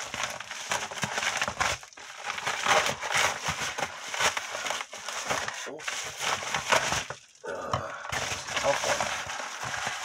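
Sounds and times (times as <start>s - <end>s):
packaging crinkling: 0.0s - 10.0s.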